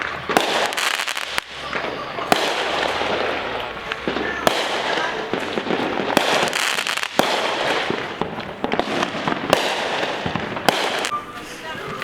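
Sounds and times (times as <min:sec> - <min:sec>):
fireworks bangs and pops: 0:00.0 - 0:12.0
fireworks crackling: 0:00.0 - 0:12.0.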